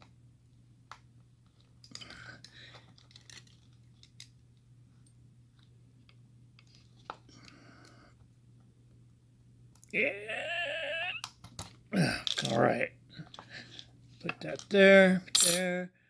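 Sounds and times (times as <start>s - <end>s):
faint metallic clicks and scrapes: 2.7s - 4.4s.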